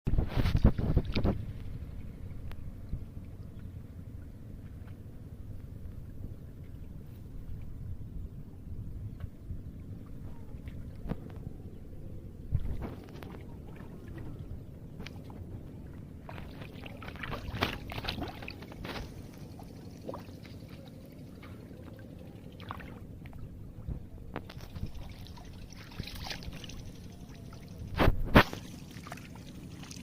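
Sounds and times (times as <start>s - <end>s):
steady low rumble: 0.1s - 30.0s
water sloshing and pouring: 12.5s - 30.0s.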